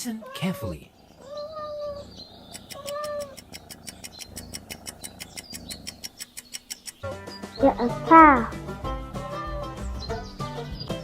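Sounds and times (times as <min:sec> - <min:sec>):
cat meowing: 0:00.1 - 0:03.4
fast even ticking: 0:02.4 - 0:07.2.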